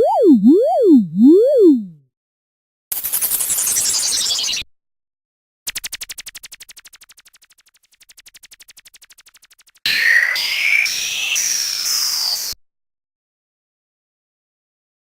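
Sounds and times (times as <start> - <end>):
falling electronic sweep: 0.0 - 1.9
whistling electronic tones: 0.0 - 2.0.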